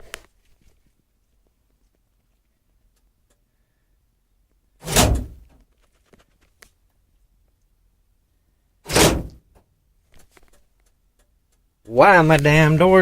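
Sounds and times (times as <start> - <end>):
van doors thunking: 4.8 - 5.5, 8.9 - 9.5.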